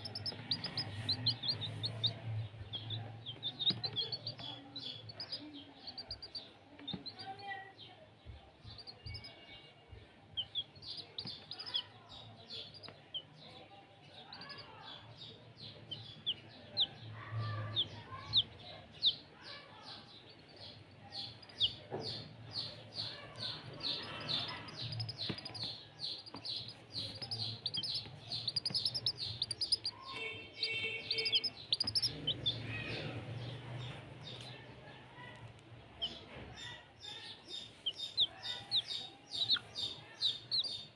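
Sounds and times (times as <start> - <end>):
chicks peeping: 0.0 - 40.9.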